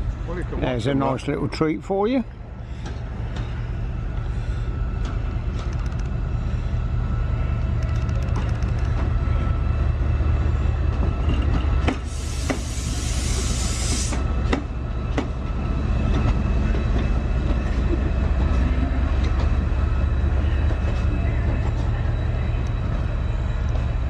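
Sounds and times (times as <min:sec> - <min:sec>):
train rumbling on rails: 0:00.0 - 0:24.0
loud hiss: 0:12.0 - 0:14.2.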